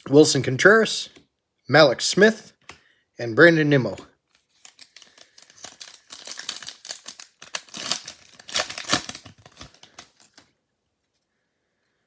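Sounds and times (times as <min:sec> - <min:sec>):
card pack wrapper tearing: 0:04.4 - 0:10.5.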